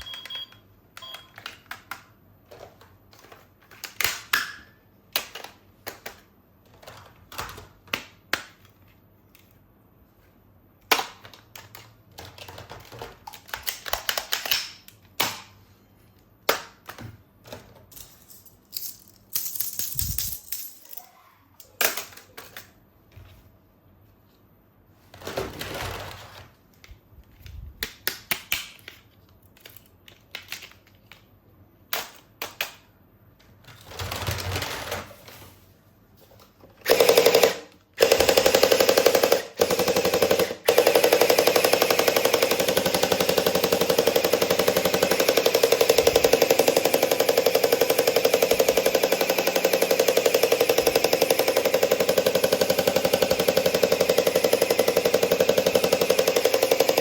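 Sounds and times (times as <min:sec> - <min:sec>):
plastic handling clicks: 0:26.7 - 0:32.8
toy gun rapid firing rattle: 0:36.8 - 0:57.0.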